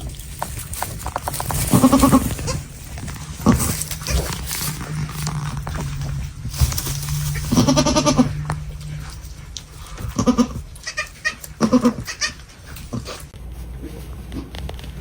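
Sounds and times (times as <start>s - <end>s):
goats bleating: 1.6s - 4.5s, 6.8s - 13.1s.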